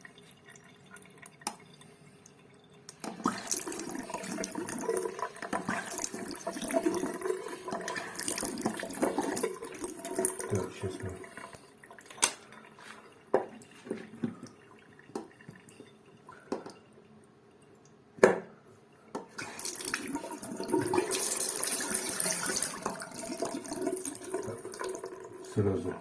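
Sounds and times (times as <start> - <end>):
water running from tap: 3.0 - 12.2, 19.4 - 26.0.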